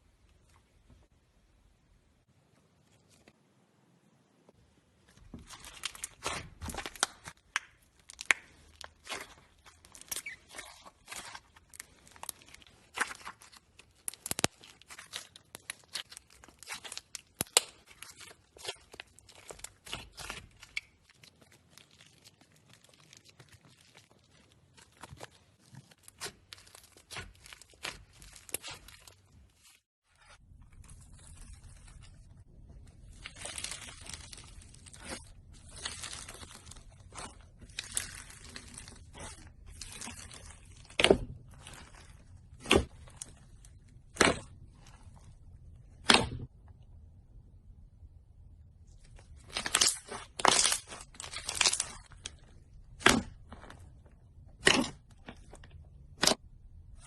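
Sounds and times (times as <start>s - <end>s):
slime crackling: 5.4s - 29.7s, 30.8s - 46.2s.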